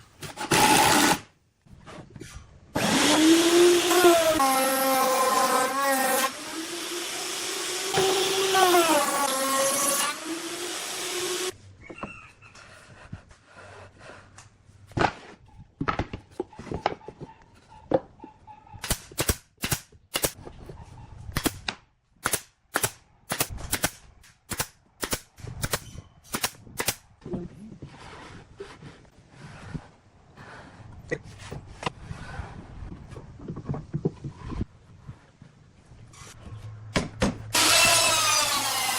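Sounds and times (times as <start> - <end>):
power tool running: 2.8 - 11.5, 37.5 - 38.9.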